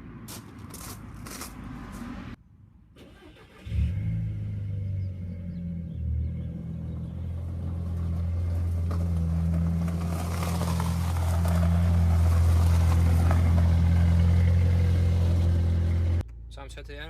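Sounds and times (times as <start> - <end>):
car engine running: 4.8 - 17.0.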